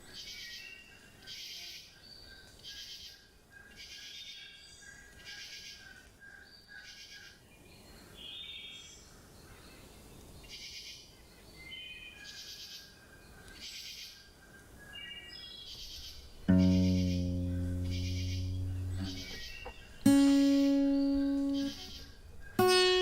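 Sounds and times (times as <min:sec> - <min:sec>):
small birds singing: 0:00.0 - 0:23.0
low outdoor hiss: 0:06.9 - 0:23.0.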